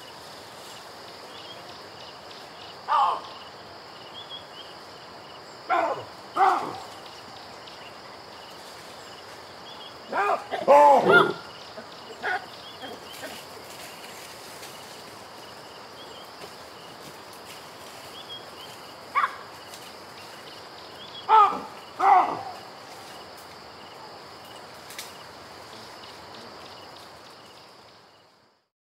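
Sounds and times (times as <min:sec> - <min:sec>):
wild ambience: 0:00.0 - 0:28.7
baboon barking: 0:02.9 - 0:03.4, 0:05.7 - 0:06.9, 0:10.1 - 0:13.4, 0:19.1 - 0:19.4, 0:21.3 - 0:22.6.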